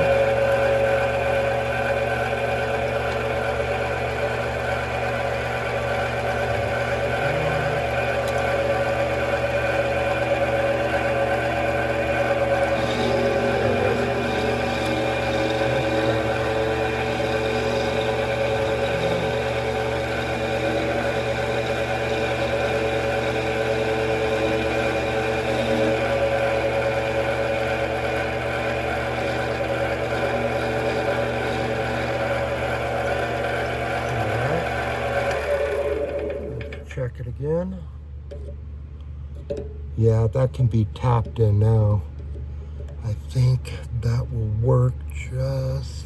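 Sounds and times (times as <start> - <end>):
metal lathe whining: 0.0 - 36.8.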